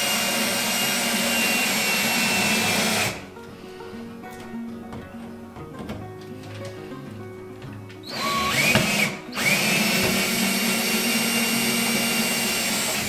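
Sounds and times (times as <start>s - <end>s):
power drill driving screw: 0.0s - 3.2s, 8.0s - 13.0s.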